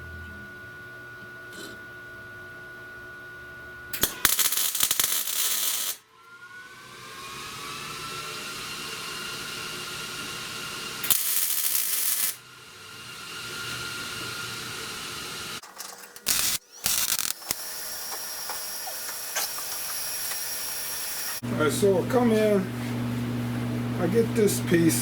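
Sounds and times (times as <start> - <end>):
welding bursts on sheet metal: 4.0 - 6.0, 11.0 - 12.4, 16.2 - 21.4.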